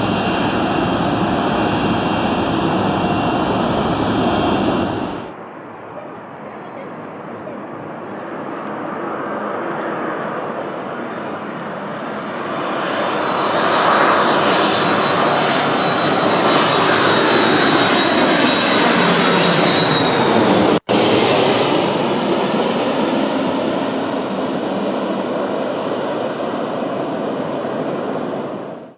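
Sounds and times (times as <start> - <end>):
high engine whine: 0.0 - 5.4
jet engines roaring: 0.0 - 5.8, 7.6 - 28.9.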